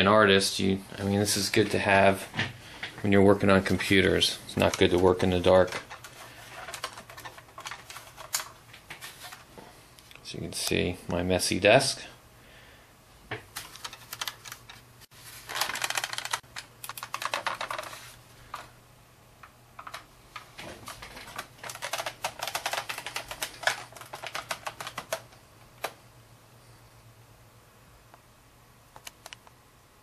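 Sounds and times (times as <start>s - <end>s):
computer keyboard typing: 6.6s - 8.5s, 13.6s - 14.8s, 15.5s - 17.9s, 20.9s - 25.9s.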